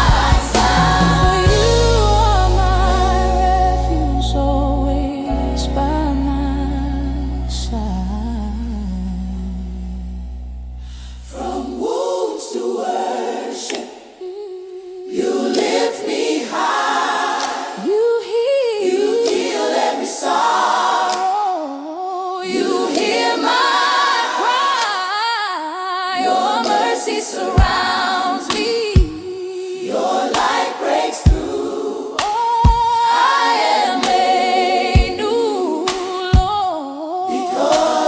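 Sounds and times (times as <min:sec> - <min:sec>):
deep kick drum thumping: 0:00.0 - 0:01.9
choir voices singing wordless runs: 0:00.0 - 0:05.7, 0:11.3 - 0:38.0
low held chord: 0:01.5 - 0:11.3.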